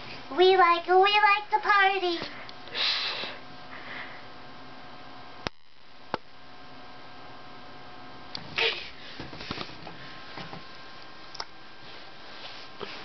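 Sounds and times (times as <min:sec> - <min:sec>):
faint steady hum: 0:00.0 - 0:13.0
loud sniff: 0:02.7 - 0:04.2.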